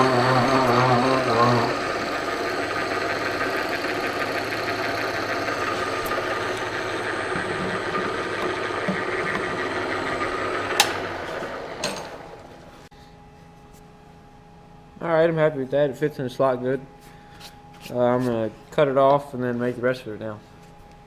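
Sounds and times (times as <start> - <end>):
electric machine tool cutting wood: 0.0 - 12.7.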